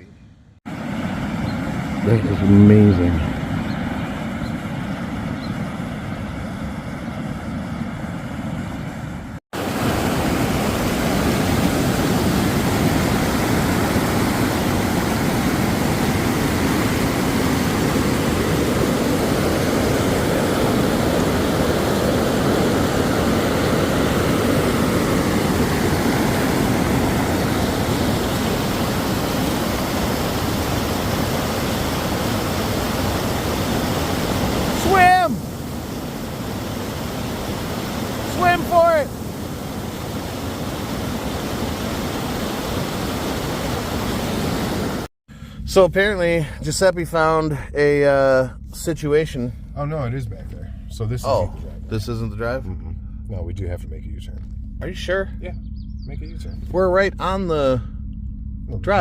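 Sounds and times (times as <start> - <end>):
waterfall roaring: 0.7 - 6.0, 9.0 - 45.1.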